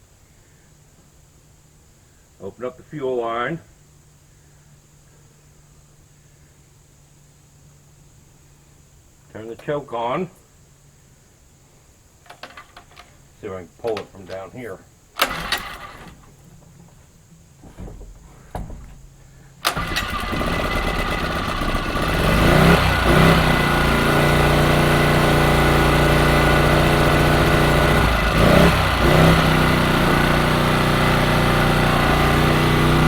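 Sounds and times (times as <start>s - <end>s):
generator pull-start: 12.3s - 13.1s, 15.2s - 33.0s
small generator engine running: 15.2s - 17.0s, 19.6s - 33.0s.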